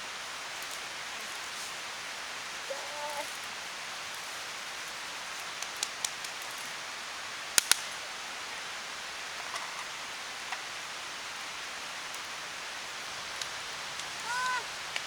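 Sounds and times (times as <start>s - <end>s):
wood fire crackling and popping: 5.3s - 6.7s, 7.6s - 8.0s, 13.2s - 14.3s.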